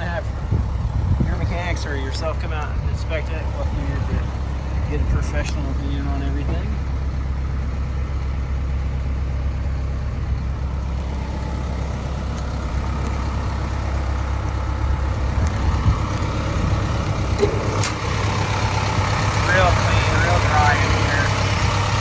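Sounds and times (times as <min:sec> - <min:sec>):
excavator diesel engine idling: 0:00.0 - 0:22.0
sharp clicks: 0:17.3 - 0:19.4.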